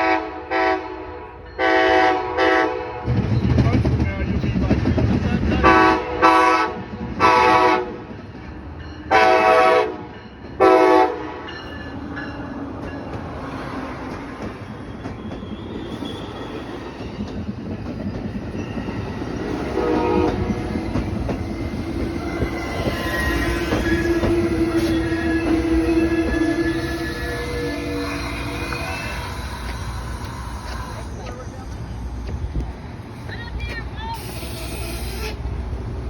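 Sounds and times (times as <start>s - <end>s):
locomotive air horn blasts: 0.0s - 3.1s, 5.6s - 8.0s, 9.1s - 10.0s, 10.6s - 11.4s, 19.7s - 20.7s, 23.4s - 30.1s, 34.1s - 35.4s
train rolling in: 0.0s - 36.0s
train wheels squealing: 14.4s - 32.5s, 34.1s - 35.5s.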